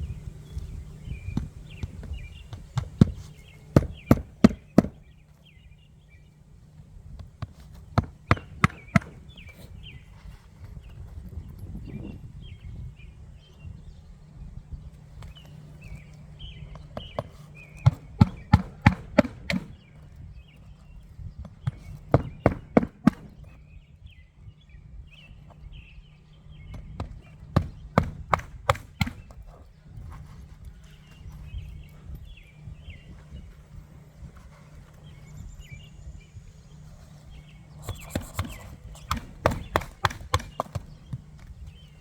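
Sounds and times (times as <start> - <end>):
hammer driving nails: 2.8 - 5.0, 8.0 - 9.5, 17.9 - 19.8, 37.8 - 41.5.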